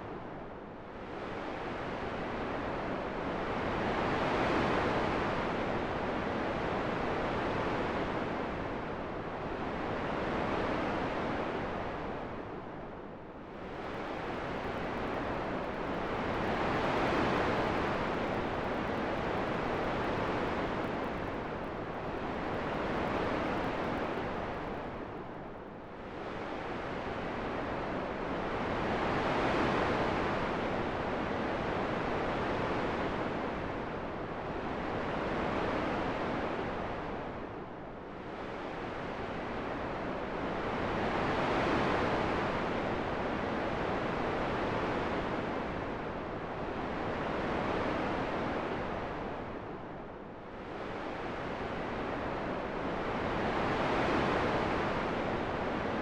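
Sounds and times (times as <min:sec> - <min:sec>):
gusting wind: 0:13.3 - 0:28.0.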